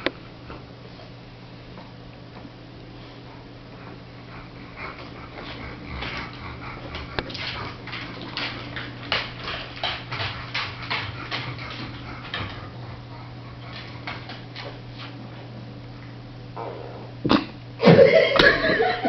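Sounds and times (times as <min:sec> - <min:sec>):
steady low hum: 0:00.0 - 0:19.0
dog breathing noisily: 0:02.9 - 0:15.5.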